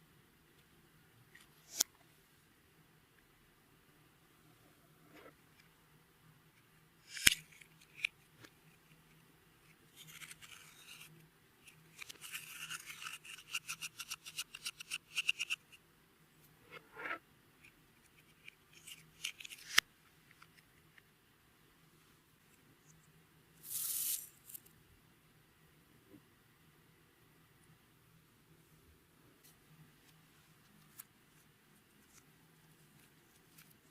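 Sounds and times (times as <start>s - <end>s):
soft hiss: 15.1s - 33.9s.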